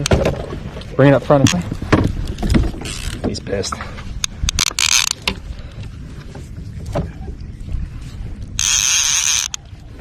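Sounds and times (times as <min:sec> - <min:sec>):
fishing reel drag buzzing: 0:04.6 - 0:05.2, 0:08.6 - 0:09.6.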